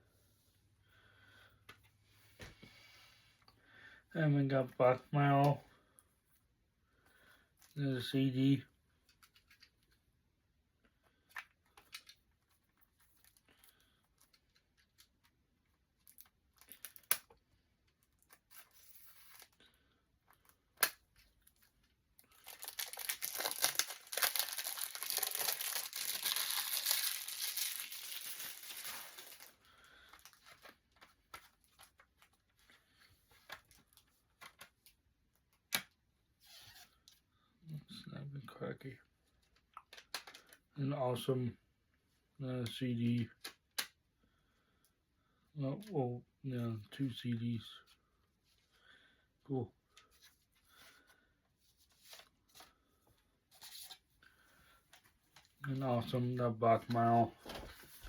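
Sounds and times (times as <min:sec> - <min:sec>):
packaging crinkling and tearing: 0:20.8 - 0:32.5.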